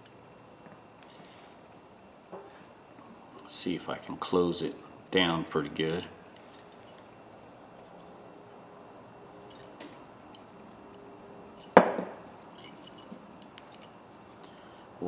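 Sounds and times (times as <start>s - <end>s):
metallic clicks of pliers: 9.5s - 10.5s
sharp metal clack: 9.5s - 10.5s.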